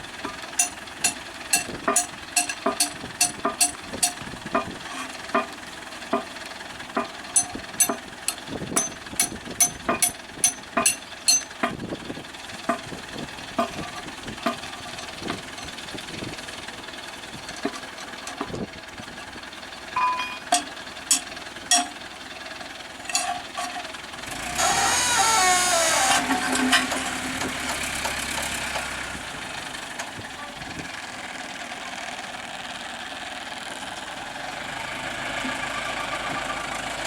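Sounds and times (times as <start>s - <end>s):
sharp metallic clanks: 0.2s - 11.9s, 12.6s - 16.0s, 20.0s - 22.0s, 23.0s - 23.9s.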